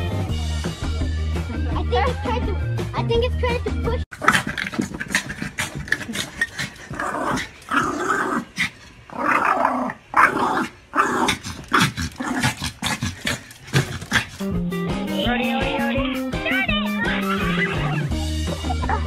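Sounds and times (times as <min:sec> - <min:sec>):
dog growling: 0:04.1 - 0:14.6.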